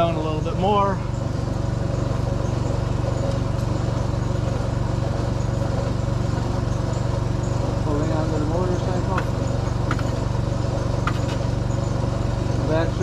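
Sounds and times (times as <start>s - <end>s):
machine humming with fast pulse: 0.0s - 13.0s.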